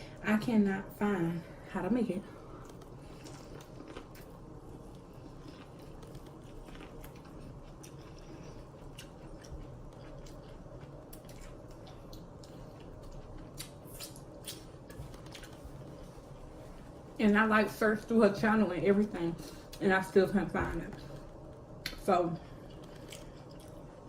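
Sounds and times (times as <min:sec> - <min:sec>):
chewing and mouth smacking: 0:02.6 - 0:15.9, 0:22.6 - 0:24.0.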